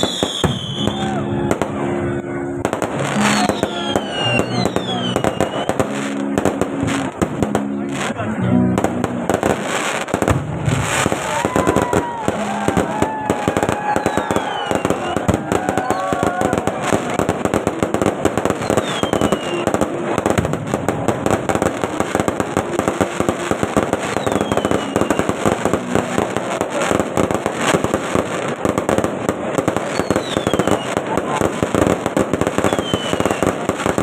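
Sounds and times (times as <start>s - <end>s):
falling firework whistle: 0.0s - 1.8s, 3.0s - 6.0s, 10.8s - 17.2s, 18.5s - 19.9s, 24.0s - 25.6s, 29.8s - 31.1s, 32.5s - 34.0s
fireworks crackling and banging: 0.0s - 34.0s.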